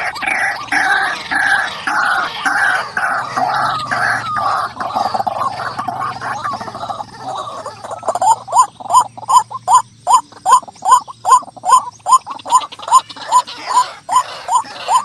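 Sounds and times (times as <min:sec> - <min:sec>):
waterhen calling: 0:00.0 - 0:15.0.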